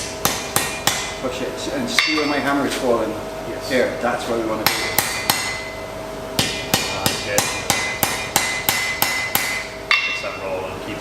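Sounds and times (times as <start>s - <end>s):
hammer striking iron on anvil: 0.0s - 1.2s, 1.9s - 2.5s, 4.6s - 5.8s, 6.4s - 10.5s.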